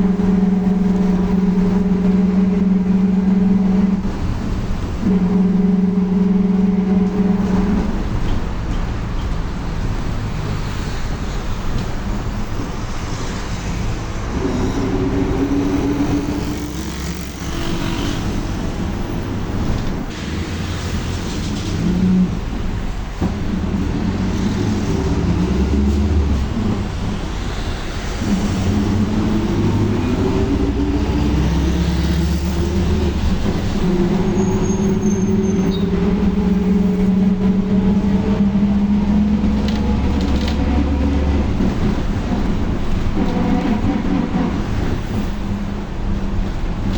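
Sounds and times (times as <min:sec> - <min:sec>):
differential roaring: 0:00.0 - 0:08.3, 0:13.7 - 0:19.8, 0:20.7 - 0:46.9
bus drivetrain drone: 0:00.0 - 0:46.9
differential growl: 0:28.2 - 0:45.6.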